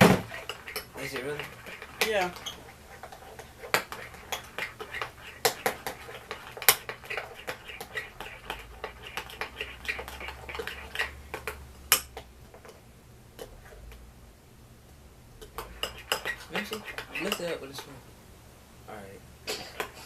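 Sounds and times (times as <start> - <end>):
spoons clicking against bowls: 0.4 - 2.6, 15.4 - 17.9.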